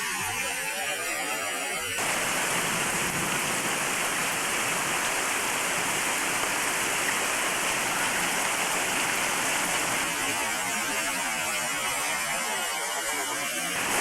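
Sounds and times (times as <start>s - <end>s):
heavy rain pouring: 2.0s - 11.6s, 13.8s - 14.0s.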